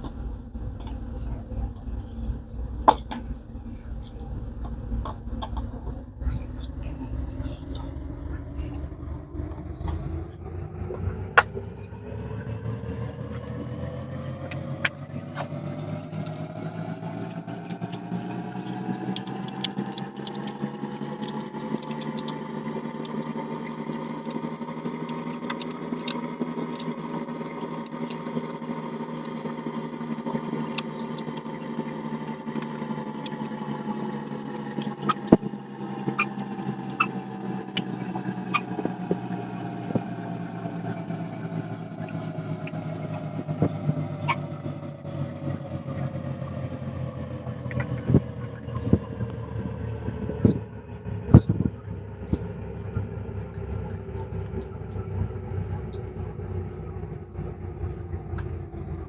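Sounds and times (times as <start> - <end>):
motor humming: 0.0 - 59.0
small parts clicking and tapping: 11.4 - 40.3.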